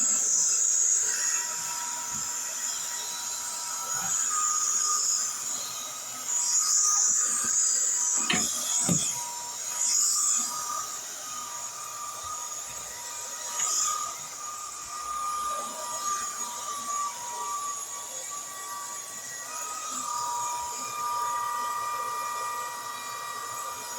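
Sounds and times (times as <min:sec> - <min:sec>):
cordless vacuum cleaner whine: 0:00.0 - 0:23.9
knocks: 0:08.2 - 0:09.2.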